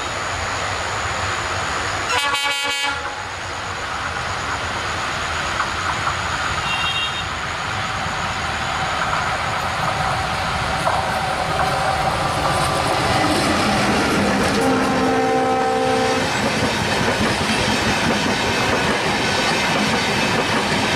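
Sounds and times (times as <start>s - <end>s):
train rumble and wheel clatter: 0.0s - 20.9s
train horn: 2.1s - 3.3s, 6.6s - 7.3s, 14.5s - 16.3s.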